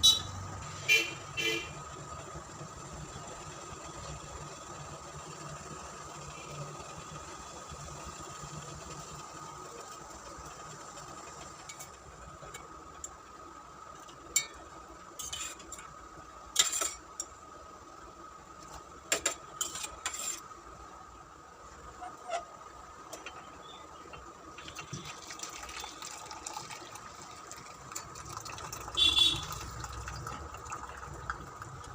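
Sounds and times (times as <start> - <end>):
metal utensils clattering against pot: 16.5 - 17.3.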